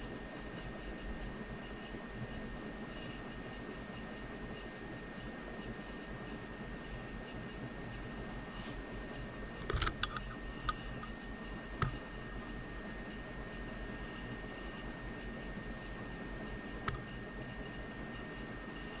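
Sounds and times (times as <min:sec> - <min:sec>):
steady background noise: 0:00.0 - 0:19.0
short clicks and taps: 0:16.8 - 0:17.1.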